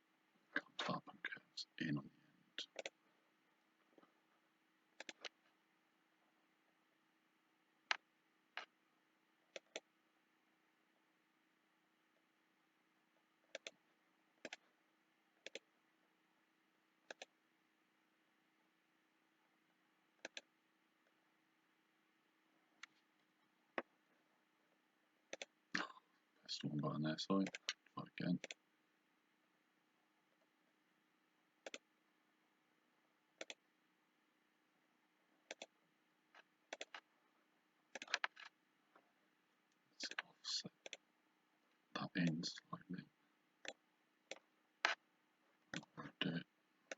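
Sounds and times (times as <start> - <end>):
faint steady hum: 0.0 - 46.9
mouse buttons clicking: 13.5 - 13.8, 15.4 - 15.6, 17.1 - 17.3, 20.2 - 20.5, 31.6 - 31.8, 33.4 - 33.6, 35.5 - 35.7, 36.7 - 37.0, 37.9 - 38.5
computer mouse button clicking: 33.4 - 33.6.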